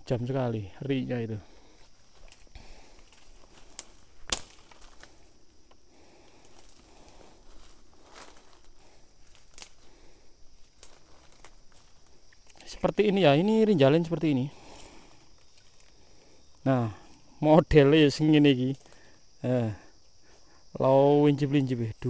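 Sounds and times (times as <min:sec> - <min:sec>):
dry vegetation rustling and crackling: 0:00.8 - 0:20.5
sharp snap: 0:03.7 - 0:04.8.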